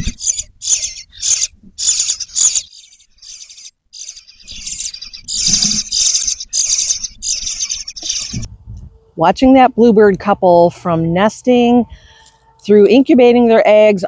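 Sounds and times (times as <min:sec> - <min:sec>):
nestlings begging calls: 0:00.0 - 0:08.5.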